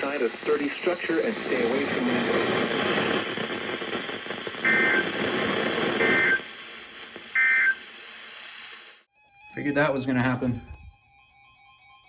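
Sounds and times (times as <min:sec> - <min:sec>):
radio hiss: 0:00.0 - 0:10.9.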